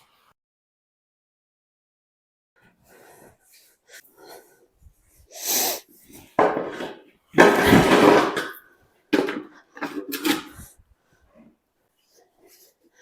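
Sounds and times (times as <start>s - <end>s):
tool scraping stable floor: 6.2s - 8.6s, 9.2s - 10.7s.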